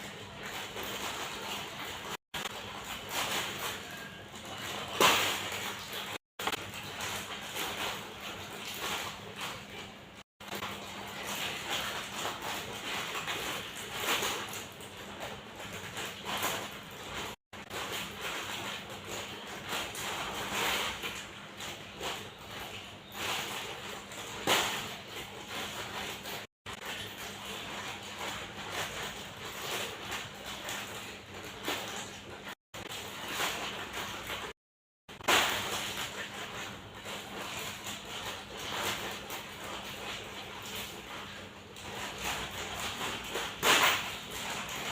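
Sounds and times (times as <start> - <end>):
handling rustle: 0.0 - 44.9
plastic packaging crinkling: 0.0 - 44.9.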